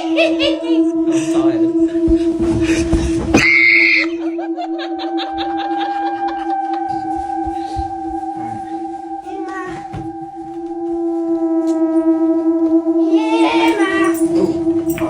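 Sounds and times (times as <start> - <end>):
voice: 0.0 - 2.4, 5.9 - 10.4, 13.0 - 15.0
music of long held notes: 0.0 - 15.0.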